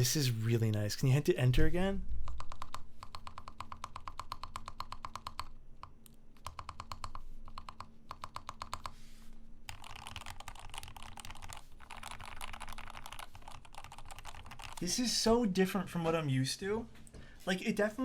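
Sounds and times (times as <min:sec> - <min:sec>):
muted keyboard typing: 0:02.2 - 0:09.0, 0:09.7 - 0:15.0.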